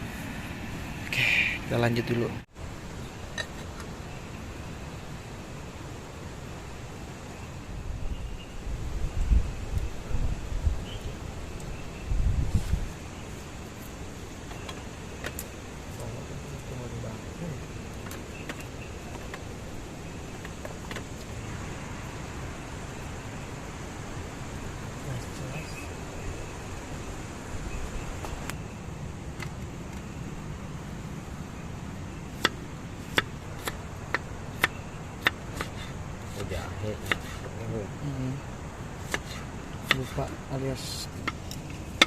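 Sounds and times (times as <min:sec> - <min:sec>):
rushing wind: 0:00.0 - 0:42.0
wind buffeting microphone: 0:07.6 - 0:15.9.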